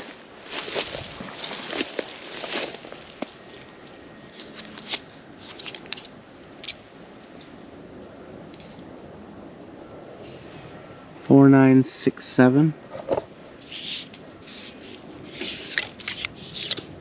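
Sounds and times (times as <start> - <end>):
rustling and crackling: 0.0 - 6.8.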